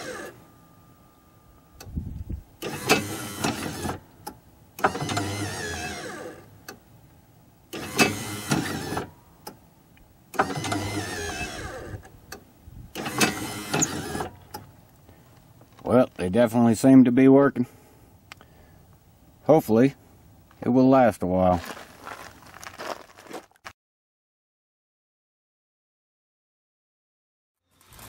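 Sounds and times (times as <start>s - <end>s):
electric gear motor whining: 0.0s - 0.4s, 2.6s - 4.0s, 4.8s - 6.5s, 7.7s - 9.1s, 10.4s - 12.1s, 12.9s - 14.4s.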